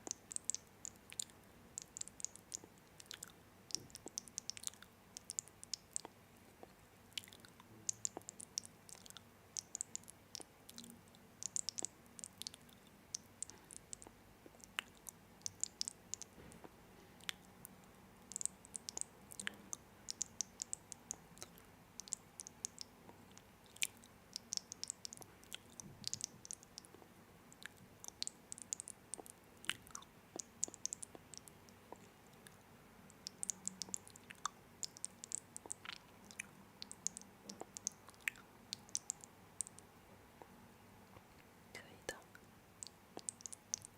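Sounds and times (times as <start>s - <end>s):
chewing crunchy snack: 0.0s - 17.5s.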